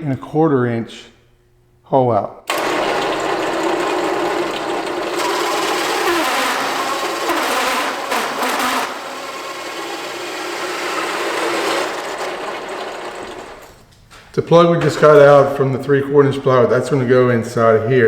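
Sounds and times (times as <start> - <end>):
hole saw rasping through wood: 2.5 - 13.7
drill press motor hum: 2.5 - 13.9.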